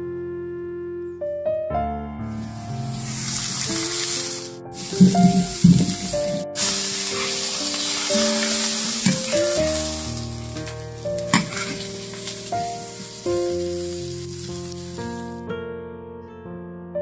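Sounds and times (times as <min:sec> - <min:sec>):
background music: 0:02.2 - 0:15.4
food sizzling in a hot pan: 0:02.4 - 0:15.4.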